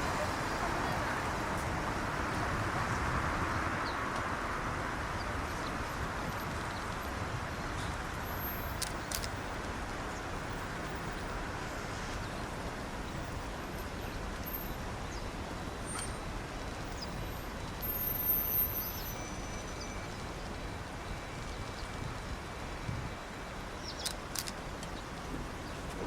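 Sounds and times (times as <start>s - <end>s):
city traffic rumble: 0.0s - 26.0s
faint high-pitched chirps and ticks: 16.9s - 26.0s.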